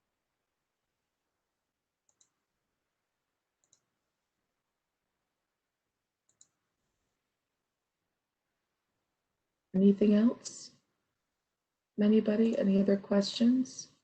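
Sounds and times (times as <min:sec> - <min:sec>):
computer mouse clicks: 0:02.0 - 0:02.5, 0:03.6 - 0:04.0, 0:06.2 - 0:06.6.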